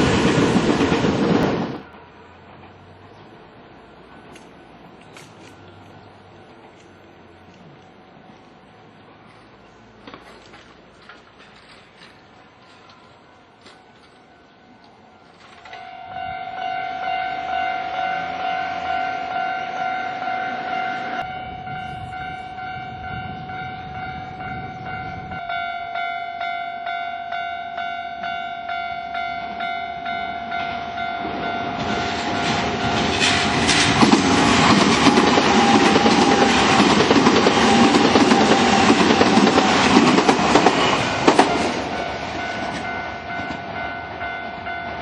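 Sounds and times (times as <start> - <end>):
level-crossing warning bell: 12.4 - 33.7, 41.9 - 45.0
train wheels clattering: 31.2 - 44.9.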